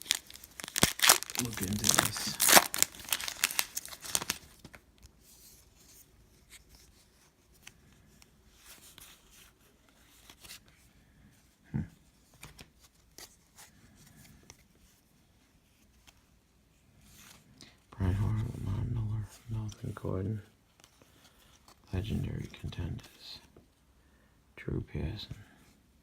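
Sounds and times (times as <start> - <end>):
plastic wrapper crinkling and tearing: 0.0 - 5.0
cards rustling: 0.0 - 10.7.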